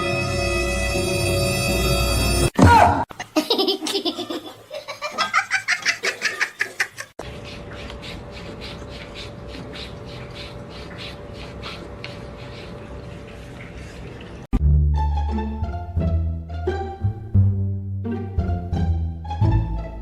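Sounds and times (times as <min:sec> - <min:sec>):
hearty laughter: 0:03.2 - 0:07.2.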